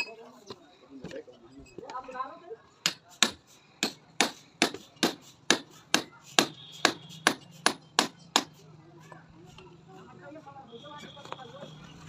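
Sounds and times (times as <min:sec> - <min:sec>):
hammer striking: 0:02.8 - 0:08.6.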